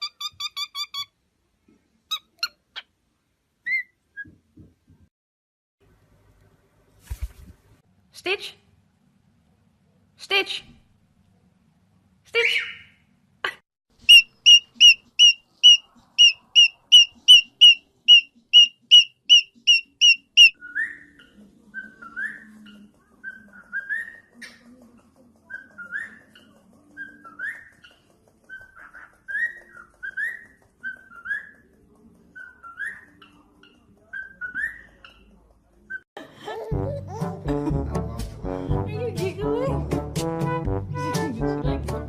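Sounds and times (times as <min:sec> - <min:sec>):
cockatiel whistling: 0:14.1 - 0:21.0
upward-sweeping bird chirps: 0:14.1 - 0:21.2.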